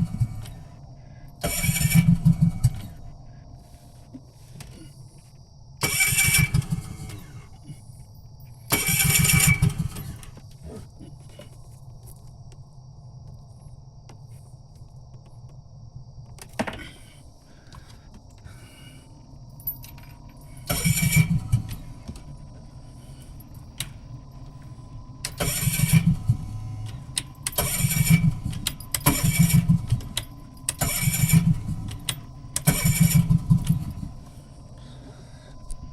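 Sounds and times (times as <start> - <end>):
engine cranking without starting: 1.4 - 3.0, 5.8 - 7.5, 8.7 - 10.4, 20.5 - 24.0, 25.2 - 34.3.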